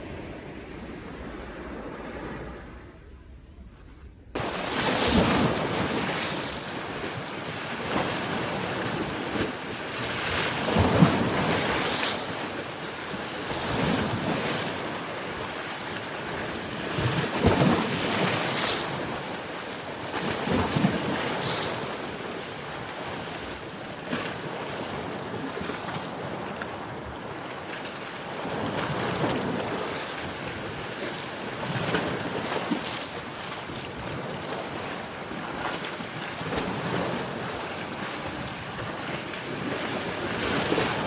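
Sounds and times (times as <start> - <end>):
waves breaking on shore: 0.0 - 3.4, 4.4 - 41.0
wind on microphone: 0.0 - 9.2.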